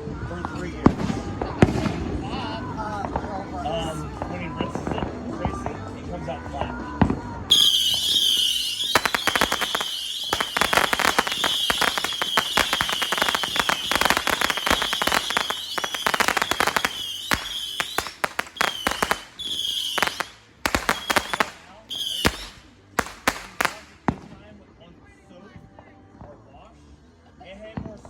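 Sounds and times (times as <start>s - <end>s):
high wavering whistle: 7.5s - 22.6s
fireworks crackling pops: 7.5s - 24.4s.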